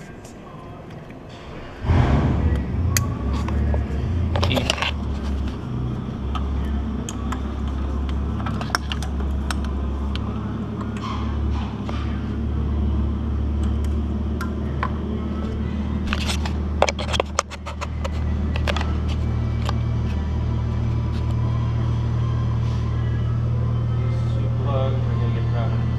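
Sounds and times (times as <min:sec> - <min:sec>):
steady low hum: 0:00.0 - 0:25.9
wiring harness connectors clicking: 0:04.3 - 0:11.1.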